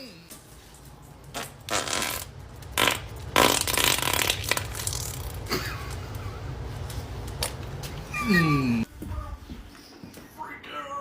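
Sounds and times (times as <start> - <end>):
person farting: 1.4 - 5.6.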